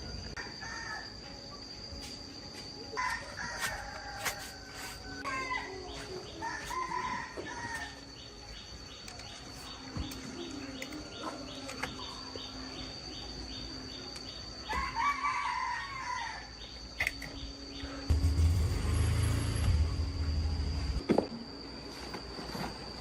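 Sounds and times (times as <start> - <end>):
rooster crowing: 3.0 - 5.4, 6.4 - 8.0, 14.7 - 16.5
steady high whine: 16.4 - 22.9.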